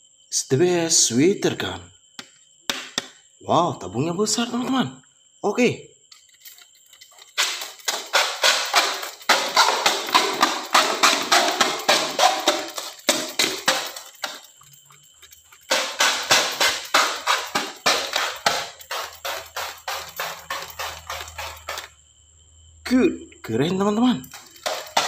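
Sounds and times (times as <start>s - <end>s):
toy gun clicking rapidly: 6.1s - 21.9s, 24.3s - 25.0s.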